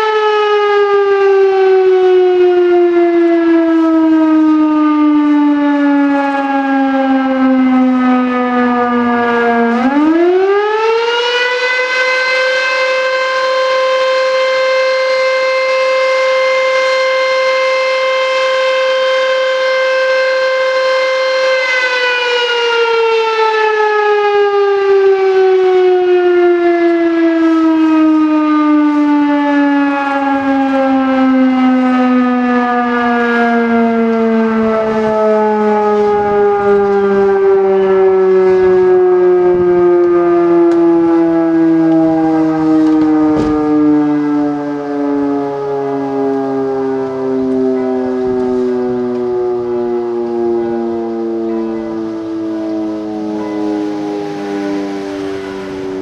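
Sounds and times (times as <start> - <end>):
fire siren wailing: 0.0 - 56.0.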